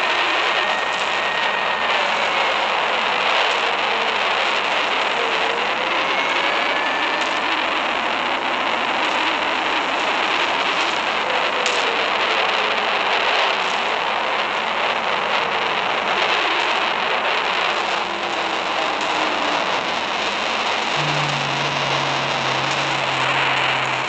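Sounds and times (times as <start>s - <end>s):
faint tone sliding down in pitch: 4.7s - 8.9s, 21.0s - 24.0s.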